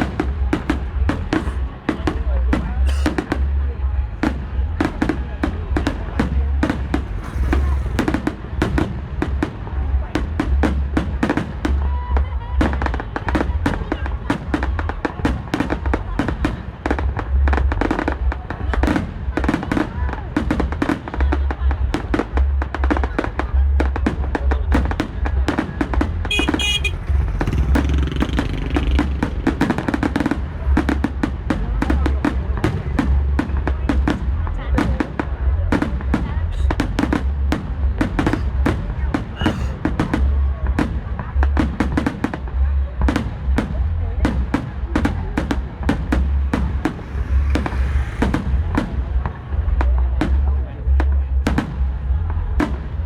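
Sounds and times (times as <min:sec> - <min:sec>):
fireworks bangs: 0:00.0 - 0:53.0
low rumble: 0:06.3 - 0:10.7, 0:26.0 - 0:31.8, 0:45.2 - 0:52.5.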